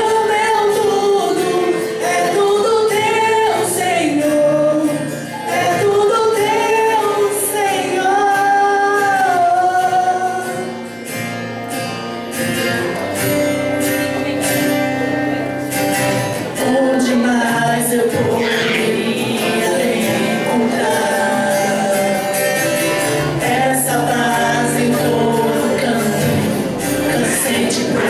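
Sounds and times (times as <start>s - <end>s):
woman singing: 0.0s - 10.7s, 16.6s - 28.0s
guitar and band accompaniment: 0.0s - 28.0s.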